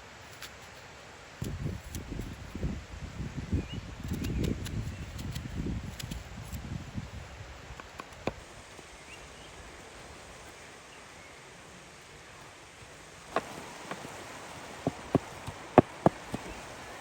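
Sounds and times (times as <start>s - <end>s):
wood fire crackling: 12.4s - 17.0s.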